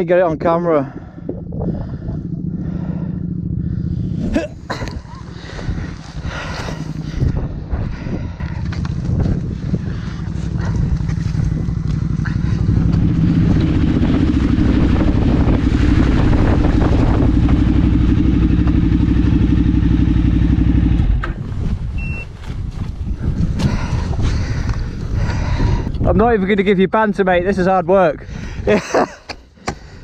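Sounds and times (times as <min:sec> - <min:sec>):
motorcycle engine revving: 0:01.1 - 0:22.2
short high beep: 0:22.0 - 0:22.3.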